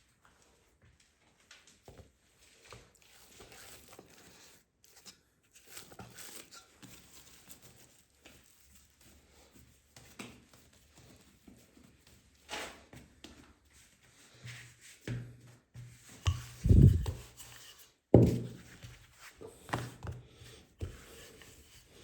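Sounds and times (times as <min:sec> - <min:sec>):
faint rustling and crinkling: 0:00.0 - 0:22.0.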